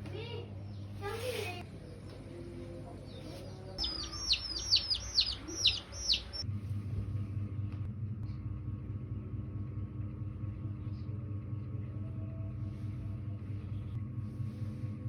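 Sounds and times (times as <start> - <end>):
low mechanical rumble: 0.0 - 15.0
bird chirping: 3.0 - 6.4.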